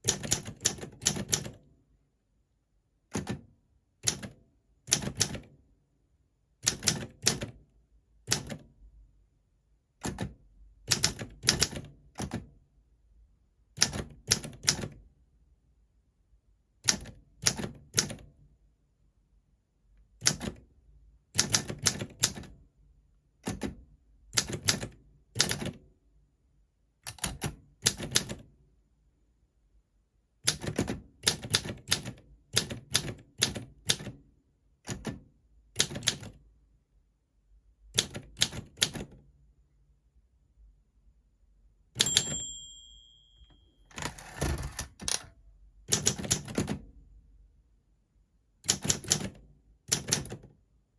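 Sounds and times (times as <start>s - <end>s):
typewriter key strikes: 42.0s - 42.6s, 43.9s - 46.8s
typewriter margin bell: 42.0s - 45.3s.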